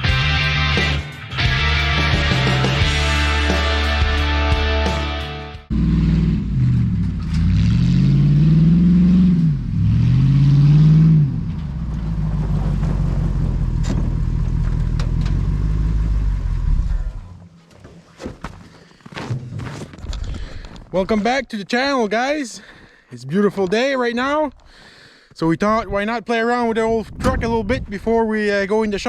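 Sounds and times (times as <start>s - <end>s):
truck engine revving and idling: 1.8s - 17.4s.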